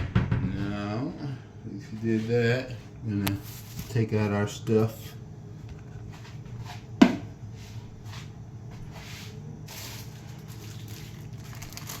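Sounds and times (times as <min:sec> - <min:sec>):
food packaging rustling: 0:03.4 - 0:04.2, 0:08.9 - 0:12.0.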